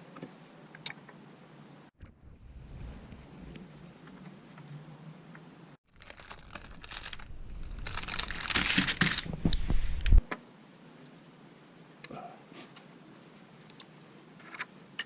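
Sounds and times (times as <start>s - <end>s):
material crinkling: 5.9s - 10.2s.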